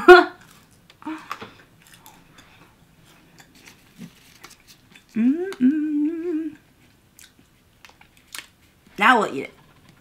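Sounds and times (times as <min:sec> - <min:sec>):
woman humming: 0:05.1 - 0:06.6.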